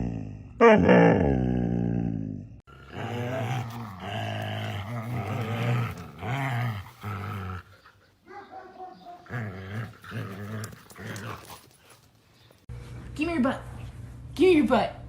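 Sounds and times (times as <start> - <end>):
dog growling: 0.0 - 7.9, 9.0 - 12.1.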